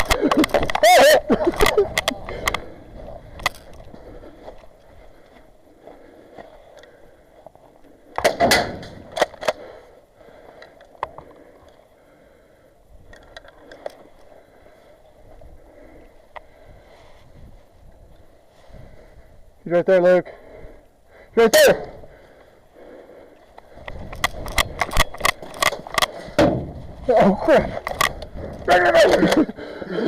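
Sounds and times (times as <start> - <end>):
shotgun racking clicks: 23.9 - 26.2.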